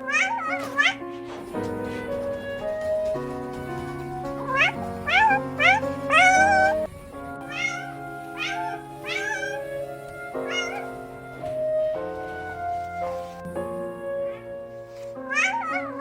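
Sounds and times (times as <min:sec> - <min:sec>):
background music: 0:00.0 - 0:16.0
cat meowing: 0:01.8 - 0:12.4.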